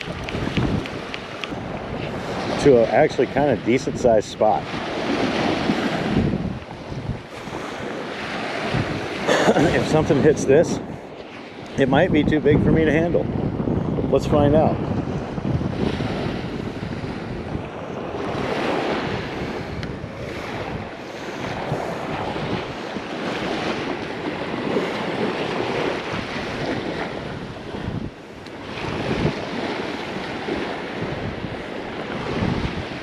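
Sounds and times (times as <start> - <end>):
gusty wind buffeting microphone: 0.0 - 33.0.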